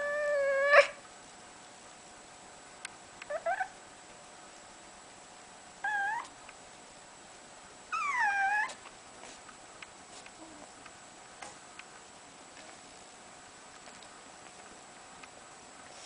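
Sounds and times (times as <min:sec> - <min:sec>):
dog whimpering: 0:00.0 - 0:01.0, 0:03.3 - 0:03.8, 0:05.8 - 0:06.3, 0:07.9 - 0:08.8.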